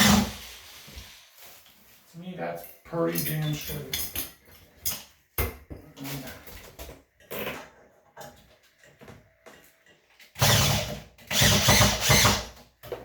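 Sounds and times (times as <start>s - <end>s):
power drill driving screw: 0.0s - 0.4s, 10.4s - 12.5s.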